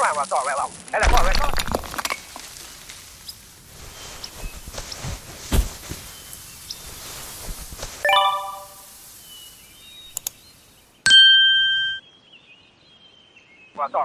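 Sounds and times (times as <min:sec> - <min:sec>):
short clicks: 0:10.1 - 0:10.4
loud steady beep: 0:11.1 - 0:12.0
ringing ding chime: 0:11.1 - 0:12.0.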